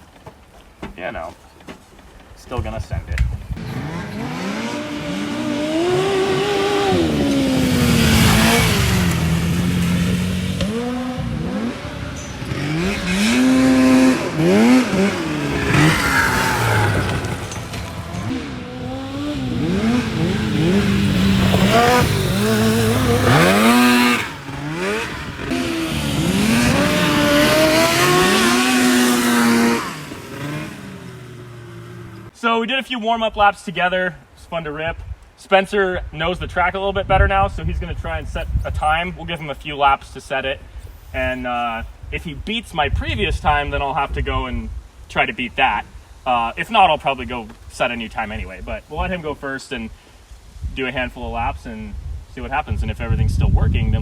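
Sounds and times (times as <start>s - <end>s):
buggy engines revving: 3.5s - 32.4s.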